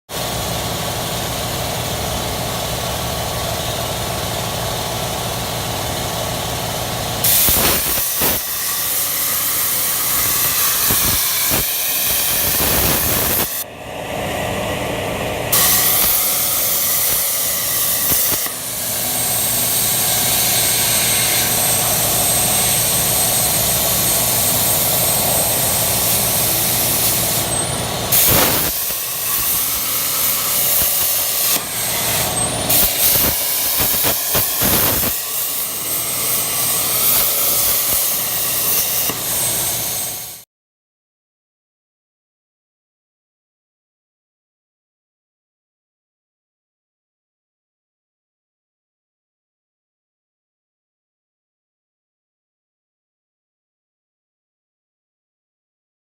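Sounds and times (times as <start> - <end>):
loud cutting hiss: 7.2 - 13.6, 15.5 - 40.4.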